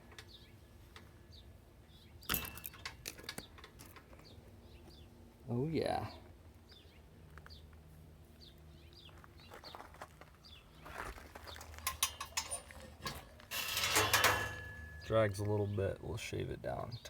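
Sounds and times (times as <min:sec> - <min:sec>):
gate rattling and scraping: 0:02.2 - 0:04.0, 0:11.0 - 0:15.4.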